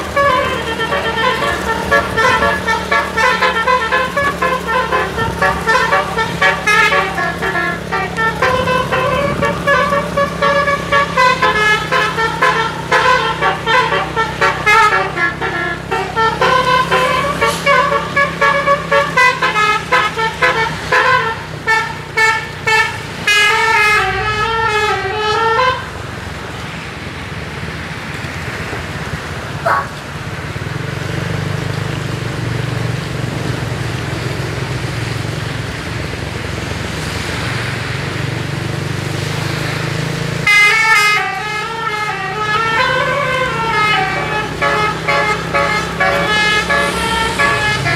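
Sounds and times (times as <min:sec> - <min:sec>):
multi-tone bus horn melody: 0:00.0 - 0:26.2, 0:39.6 - 0:47.9
bus engine noise: 0:00.0 - 0:47.9
short rising horn note: 0:00.1 - 0:19.7, 0:41.9 - 0:47.9.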